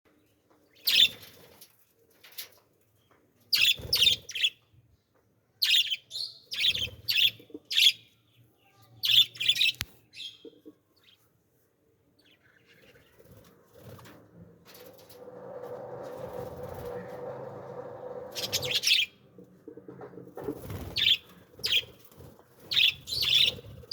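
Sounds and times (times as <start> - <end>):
birds chirping: 5.6 - 11.2, 18.3 - 19.3, 20.7 - 23.9.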